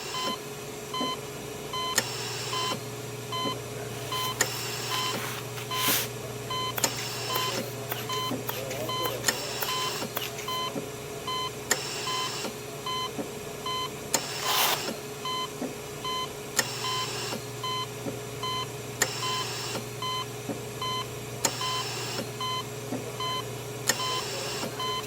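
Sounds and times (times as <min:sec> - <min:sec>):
steady low hum: 0:01.6 - 0:12.8
short electronic beeps: 0:03.4 - 0:11.5.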